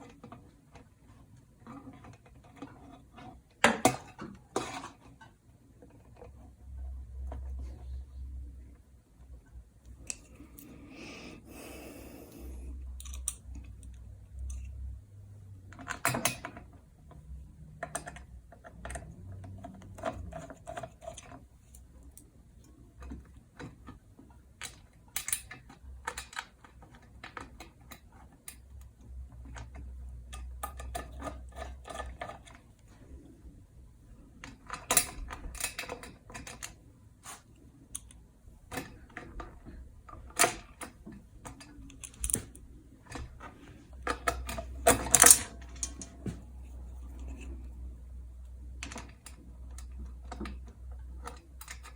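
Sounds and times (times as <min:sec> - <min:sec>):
faint low hum: 0:28.4 - 0:51.9
plastic and metal parts clicking: 0:38.0 - 0:46.1.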